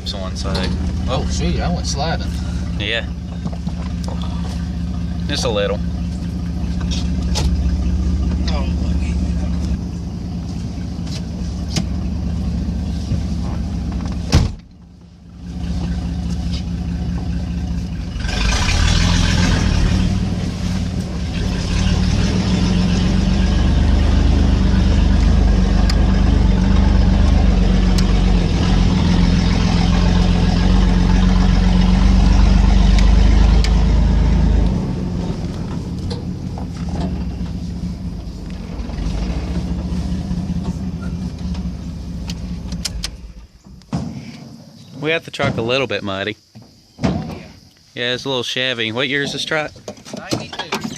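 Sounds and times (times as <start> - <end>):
truck engine driving through mud: 15.4 - 43.6.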